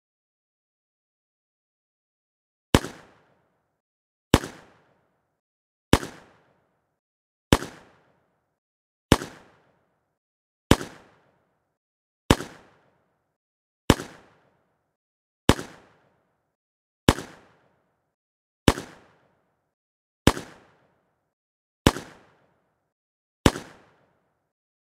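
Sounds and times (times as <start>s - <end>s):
handgun shots: 4.3s - 5.0s, 5.9s - 6.5s, 7.5s - 8.0s, 9.1s - 9.7s, 10.7s - 11.3s, 12.3s - 12.9s, 13.9s - 14.4s, 15.5s - 16.0s, 17.1s - 17.6s, 18.7s - 19.2s, 20.3s - 20.8s, 21.8s - 22.4s, 23.4s - 24.2s.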